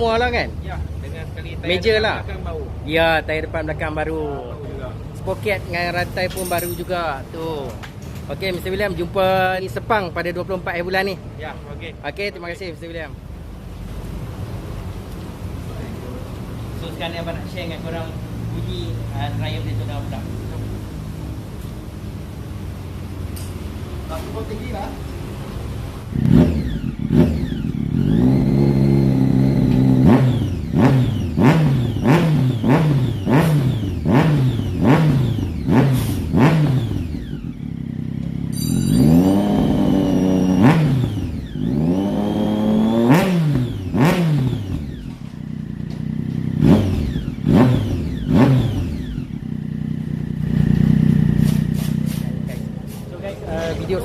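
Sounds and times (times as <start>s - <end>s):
motorcycle engine revving: 15.5s - 54.0s.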